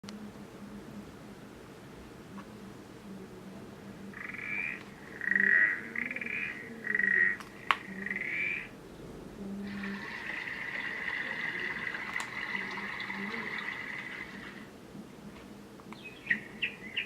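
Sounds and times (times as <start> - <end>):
recorded frog croaking from speaker: 4.1 - 8.8, 9.6 - 14.7
steady hissing: 9.4 - 14.8.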